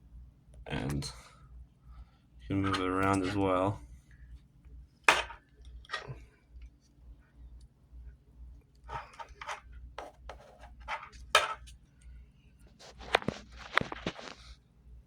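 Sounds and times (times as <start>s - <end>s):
faint low hum: 0.0s - 15.0s
joystick rattling and scraping: 2.5s - 3.4s, 8.8s - 11.7s.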